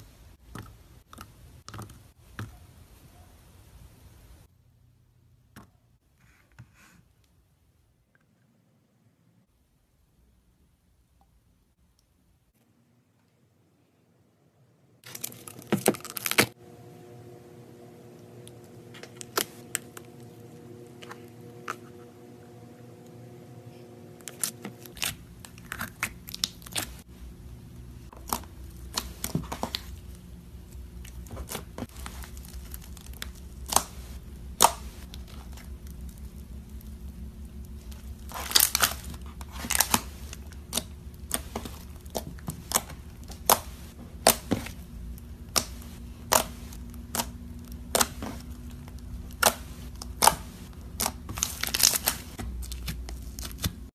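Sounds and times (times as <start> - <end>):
steady low hum: 16.5 - 53.9
slime popping and crackling: 24.3 - 27.0, 31.0 - 53.9.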